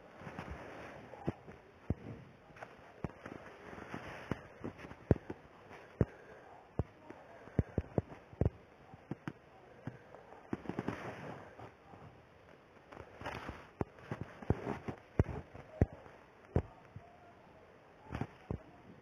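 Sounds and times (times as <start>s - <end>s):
sharp pops and crackles: 1.2s - 11.8s, 12.4s - 17.0s.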